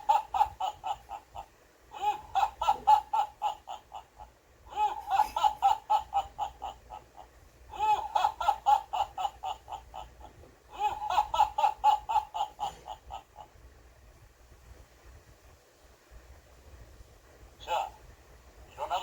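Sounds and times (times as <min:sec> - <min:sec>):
alarm clock laugh-like call: 0:00.0 - 0:13.6, 0:18.8 - 0:19.0.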